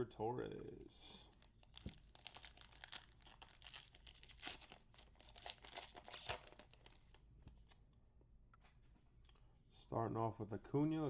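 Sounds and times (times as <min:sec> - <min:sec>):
plastic wrapper tearing and crinkling: 0:01.3 - 0:07.2.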